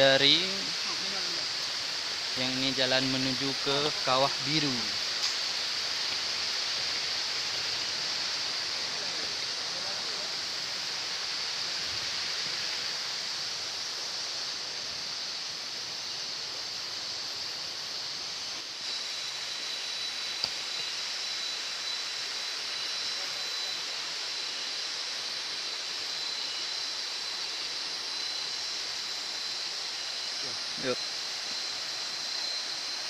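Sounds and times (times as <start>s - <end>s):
steady outdoor hiss: 0.0s - 33.0s
thin high tone: 18.8s - 33.0s.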